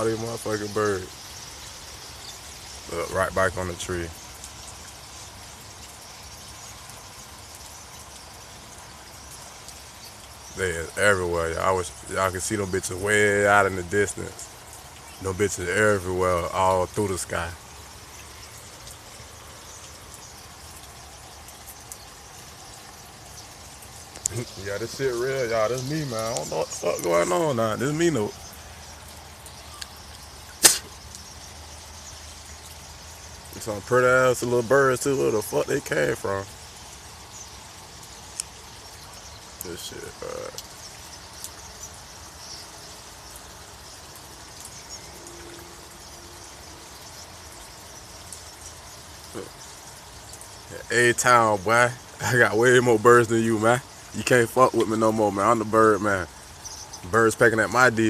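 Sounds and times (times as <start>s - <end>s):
flock of small birds chattering: 0.0s - 58.0s
high bird chirps: 13.5s - 43.6s.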